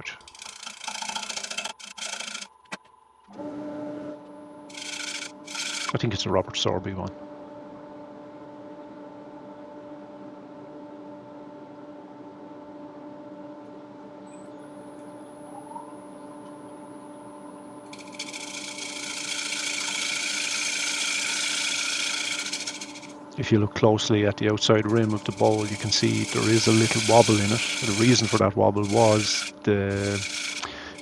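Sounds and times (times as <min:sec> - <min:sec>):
wood lathe humming: 0:00.0 - 0:02.5, 0:04.7 - 0:06.0, 0:17.9 - 0:31.0
gouge cutting spinning wood: 0:00.0 - 0:02.6, 0:04.7 - 0:06.0, 0:17.9 - 0:23.8, 0:24.4 - 0:31.0.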